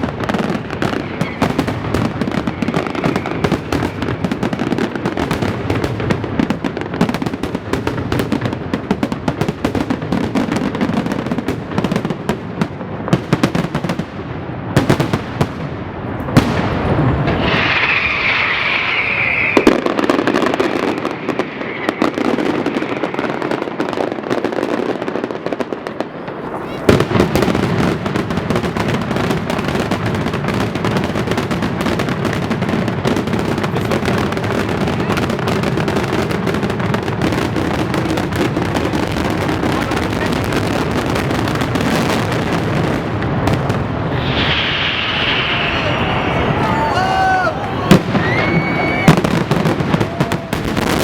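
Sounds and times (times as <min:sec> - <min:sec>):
fireworks bangs and crackling: 0:00.0 - 0:51.0
shrill high hissing: 0:17.3 - 0:19.7, 0:44.1 - 0:47.1.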